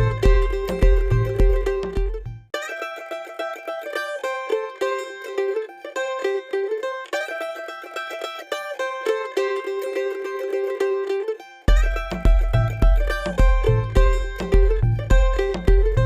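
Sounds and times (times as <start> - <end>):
low bass line: 0.0 - 2.5, 11.7 - 16.0
plucked-string tune: 0.0 - 16.0.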